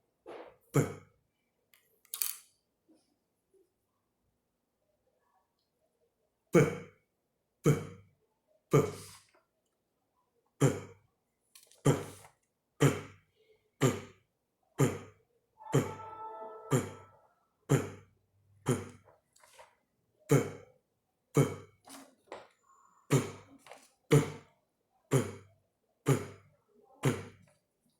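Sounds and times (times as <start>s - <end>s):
person making p sounds: 10.6s - 10.9s, 11.8s - 13.2s, 13.8s - 14.2s, 14.8s - 18.1s, 18.7s - 19.0s, 20.3s - 20.7s, 21.3s - 21.7s, 23.1s - 24.5s, 25.1s - 25.5s, 27.0s - 27.4s.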